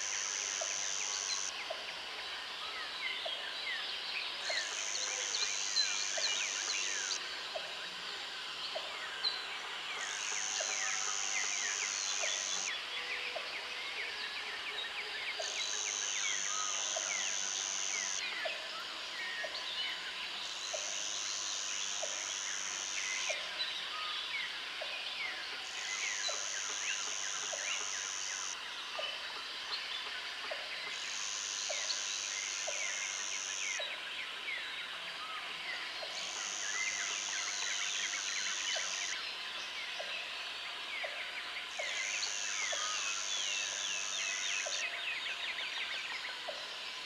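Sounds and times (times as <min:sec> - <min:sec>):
insect high buzz: 0:00.0 - 0:01.7, 0:04.4 - 0:07.3, 0:10.0 - 0:12.8, 0:15.4 - 0:18.4, 0:20.4 - 0:24.5, 0:25.2 - 0:33.8, 0:36.1 - 0:40.6, 0:41.7 - 0:44.9.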